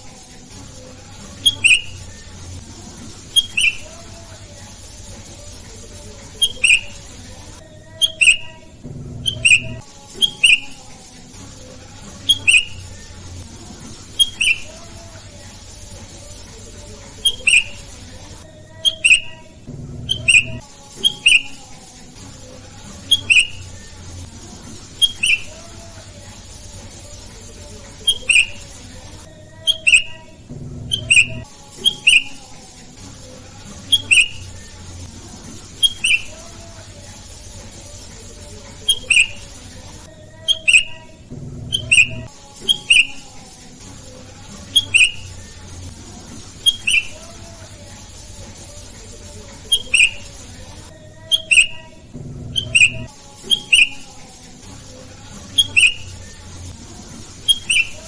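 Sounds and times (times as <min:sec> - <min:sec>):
bird calling sharp notes: 0:01.4 - 0:02.1, 0:03.3 - 0:04.0, 0:06.4 - 0:07.0, 0:08.0 - 0:10.8, 0:12.2 - 0:13.0, 0:14.2 - 0:14.9, 0:17.2 - 0:17.9, 0:18.8 - 0:21.6, 0:23.1 - 0:23.7, 0:25.0 - 0:25.8, 0:28.0 - 0:28.7, 0:29.6 - 0:32.5, 0:33.9 - 0:34.6, 0:35.8 - 0:36.5, 0:38.8 - 0:39.5, 0:40.5 - 0:43.3, 0:44.7 - 0:45.4, 0:46.6 - 0:47.3, 0:49.7 - 0:50.4, 0:51.3 - 0:52.0, 0:52.6 - 0:54.1, 0:55.6 - 0:56.3, 0:57.4 - 0:58.0.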